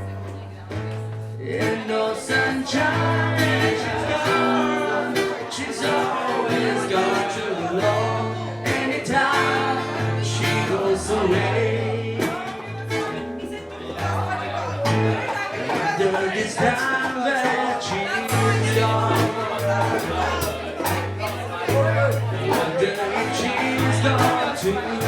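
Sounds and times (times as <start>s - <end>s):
bass line: 0.0s - 15.6s, 18.2s - 25.0s
strummed acoustic guitar: 0.0s - 25.0s
person singing: 1.4s - 13.2s, 15.5s - 21.1s, 22.4s - 25.0s.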